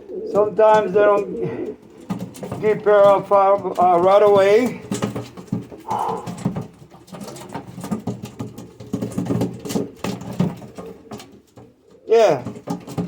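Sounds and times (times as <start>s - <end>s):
pigeon low cooing: 0.0s - 2.1s, 5.7s - 6.6s, 10.7s - 12.6s.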